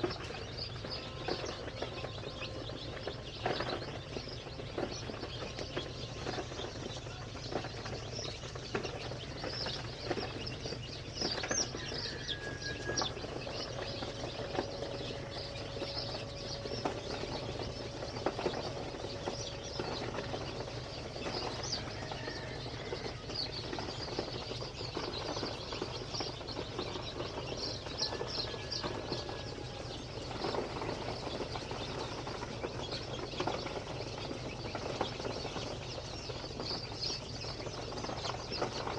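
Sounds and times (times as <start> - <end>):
chicks peeping: 0.0 - 38.9
steady low hum: 13.0 - 35.1.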